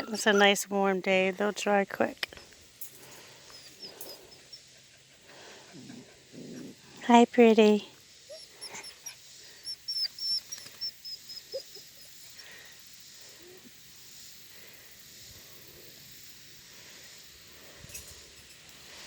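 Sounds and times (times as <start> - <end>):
puppy low whimpers: 0.0 - 0.6, 8.3 - 12.2
puppy high chirps: 8.3 - 12.1.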